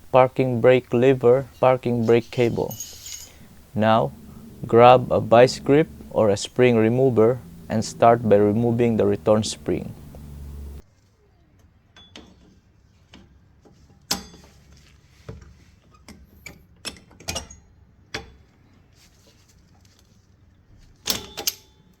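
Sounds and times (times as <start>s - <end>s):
metal tools clinking on brake parts: 1.6s - 4.6s.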